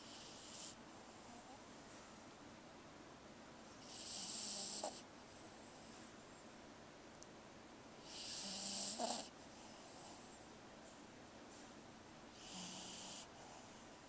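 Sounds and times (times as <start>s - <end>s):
dog snoring: 0.0s - 1.7s, 3.8s - 6.1s, 8.0s - 10.3s, 12.3s - 14.0s.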